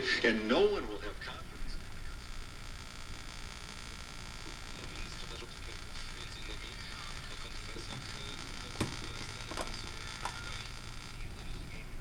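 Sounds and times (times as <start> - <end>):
faint steady hiss: 0.0 - 12.0
clock radio controls clicking: 4.4 - 11.6.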